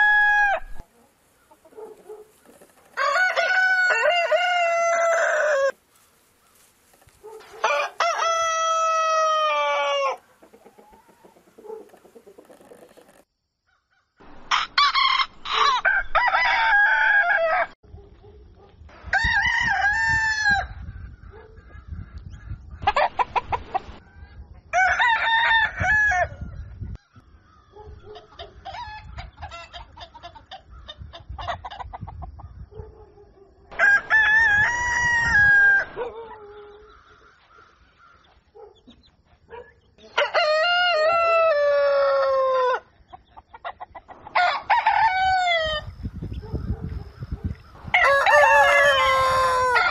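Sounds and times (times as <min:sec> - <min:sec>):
roosters crowing: 0:00.0 - 0:05.8, 0:06.6 - 0:13.1, 0:14.2 - 0:17.8, 0:19.0 - 0:21.0, 0:24.7 - 0:26.5, 0:33.7 - 0:38.3, 0:40.0 - 0:42.9, 0:43.9 - 0:49.9
chickens clucking: 0:00.7 - 0:03.1, 0:10.0 - 0:16.1, 0:20.8 - 0:24.7, 0:27.1 - 0:32.6, 0:42.8 - 0:44.7, 0:45.4 - 0:49.9.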